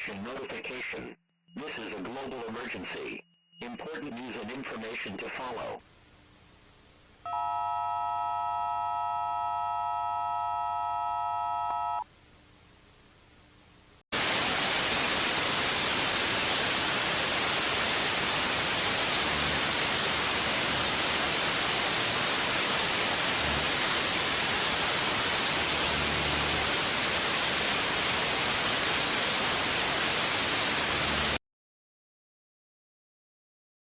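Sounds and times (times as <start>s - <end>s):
white-noise static: 3.9s - 31.4s
emergency alert tone chord: 7.3s - 12.0s.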